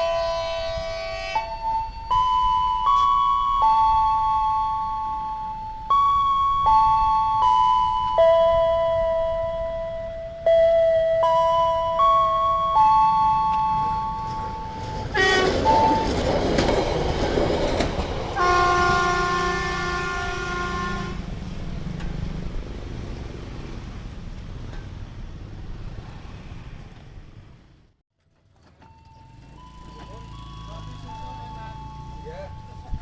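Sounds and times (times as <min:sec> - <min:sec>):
train horn: 0:00.0 - 0:01.6, 0:14.8 - 0:16.2, 0:18.4 - 0:21.3
crossing electronic warning tones: 0:00.0 - 0:21.2, 0:28.8 - 0:33.0
train wheels rumbling and clattering: 0:13.4 - 0:20.5, 0:21.2 - 0:26.2.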